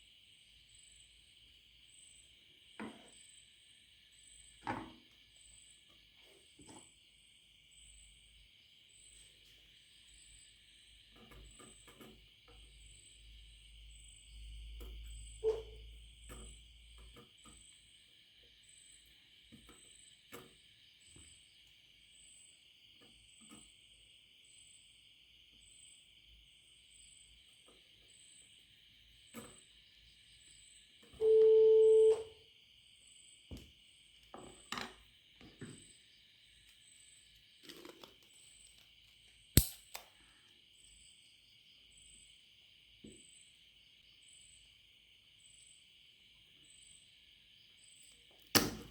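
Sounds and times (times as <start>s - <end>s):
electronic beep: 31.2s - 32.3s
soldering clicks and taps: 39.6s - 40.0s
sharp click: 39.6s - 40.1s.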